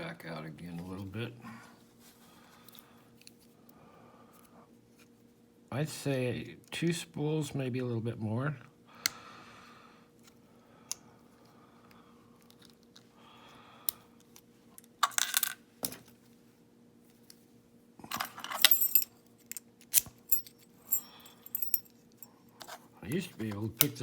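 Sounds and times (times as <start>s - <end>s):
metal lock parts jingling: 18.1s - 22.8s.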